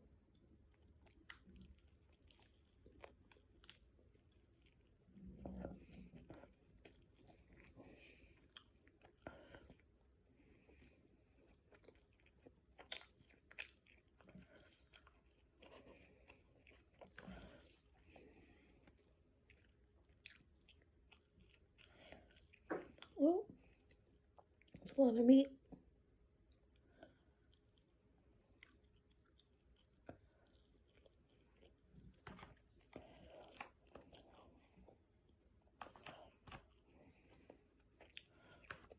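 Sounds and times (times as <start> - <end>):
chewing and wet mouth noises: 0.2 - 24.9, 26.4 - 38.9.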